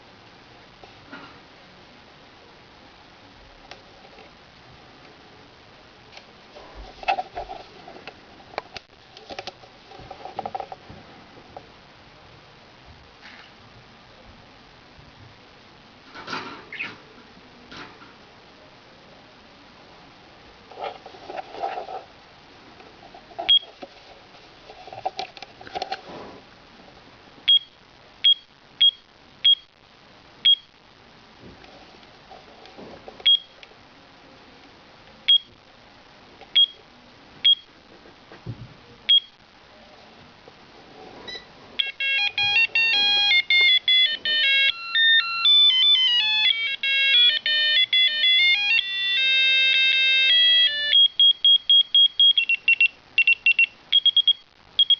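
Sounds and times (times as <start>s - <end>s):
electronic alarm melody: 41.8s - 54.9s
alarm clock short beeps: 49.7s - 54.9s.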